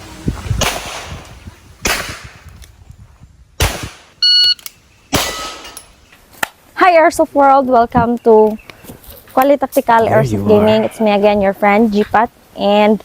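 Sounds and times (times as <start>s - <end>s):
short electronic beep: 4.2s - 4.6s.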